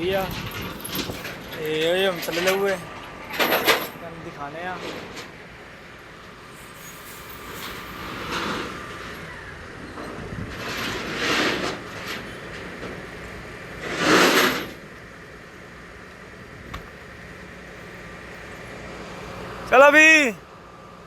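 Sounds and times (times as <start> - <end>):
excavator engine hum: 7.7 - 21.0.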